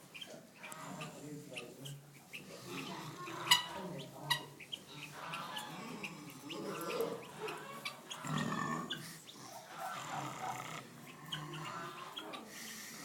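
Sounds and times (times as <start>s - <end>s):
pigs snoring: 8.2s - 13.0s.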